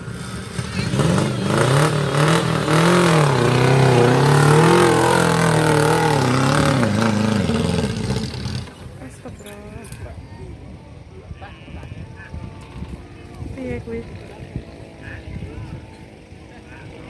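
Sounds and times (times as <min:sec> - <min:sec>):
engine revving: 0:00.0 - 0:09.2.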